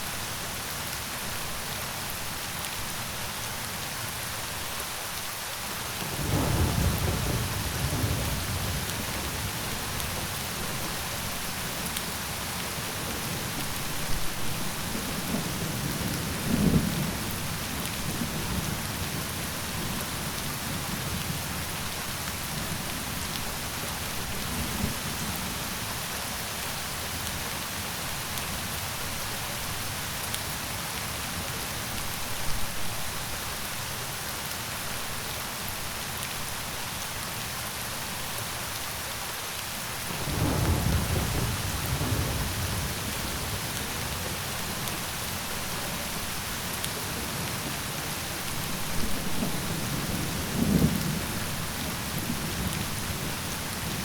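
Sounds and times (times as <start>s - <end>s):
thunder rumbling: 6.2s - 10.1s, 40.1s - 44.8s
rain hissing: 39.5s - 54.0s.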